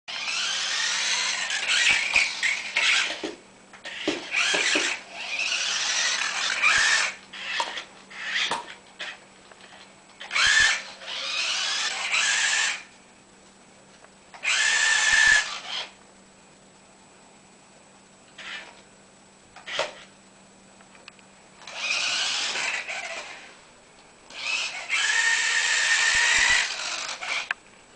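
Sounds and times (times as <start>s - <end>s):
toy car electric motor whirring: 0.1s - 9.2s, 10.2s - 12.9s, 14.4s - 16.0s, 18.4s - 18.8s, 21.6s - 23.6s, 24.3s - 27.6s.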